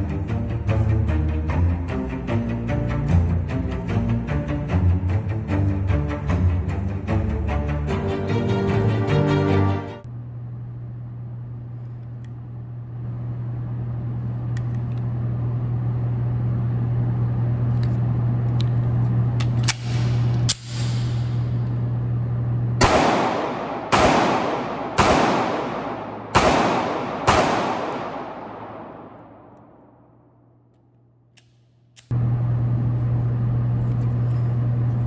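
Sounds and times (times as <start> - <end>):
steady low hum: 10.0 - 35.0
pistol shots with ringing echo: 22.8 - 29.6
sharp quiet cracks: 22.8 - 29.8.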